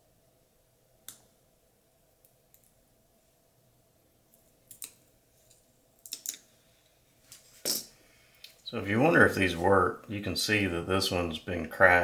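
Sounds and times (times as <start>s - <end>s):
faint steady hum: 0.0s - 12.0s
small hard items clicking: 6.0s - 6.4s.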